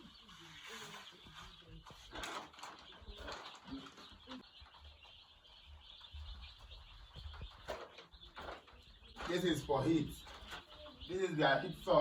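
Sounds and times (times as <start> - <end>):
chicks cheeping: 0.0 - 12.0.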